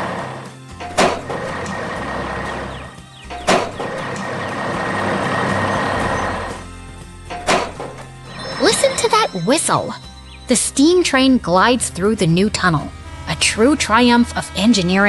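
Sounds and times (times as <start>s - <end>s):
heavy truck engine running: 0.0s - 8.2s.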